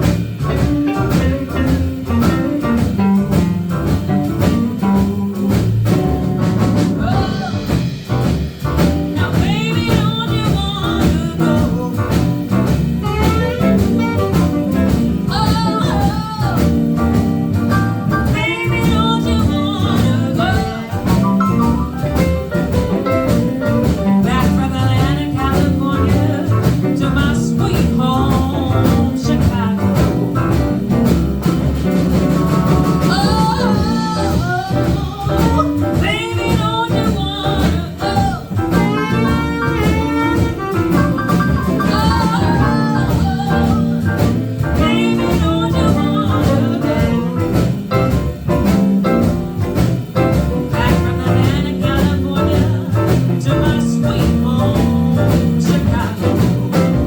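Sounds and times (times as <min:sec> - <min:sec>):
live jazz blues band: 0:00.0 - 0:57.0
person singing: 0:07.0 - 0:07.8, 0:32.7 - 0:47.8, 0:50.7 - 0:57.0.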